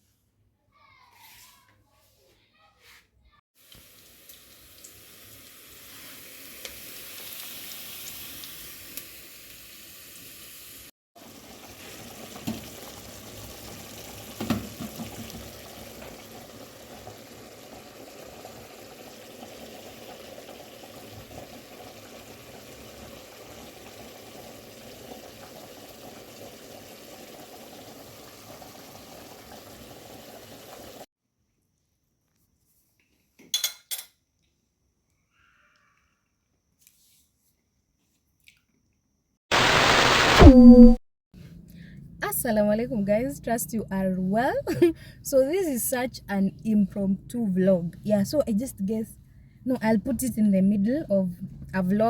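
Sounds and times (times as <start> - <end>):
dishes clinking: 33.5 - 34.2.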